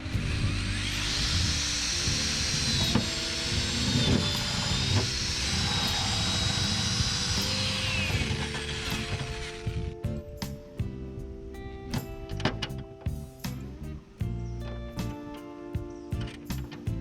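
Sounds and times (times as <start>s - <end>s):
power tool whining: 0.0s - 10.0s
background music: 0.0s - 17.0s.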